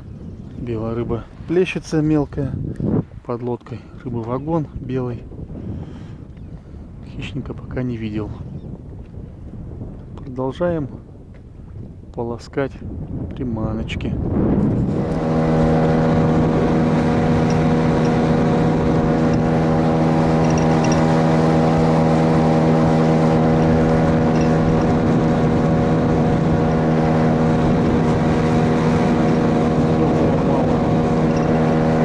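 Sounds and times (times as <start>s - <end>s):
outboard boat motor running: 14.2s - 32.0s.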